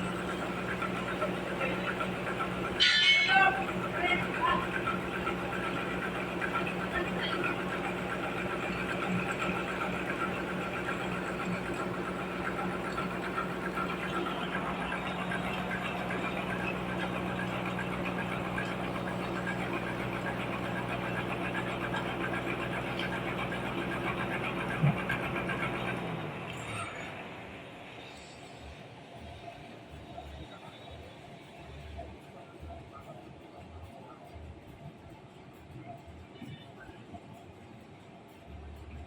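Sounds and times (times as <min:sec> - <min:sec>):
sawmill machinery drone: 0:00.0 - 0:30.7.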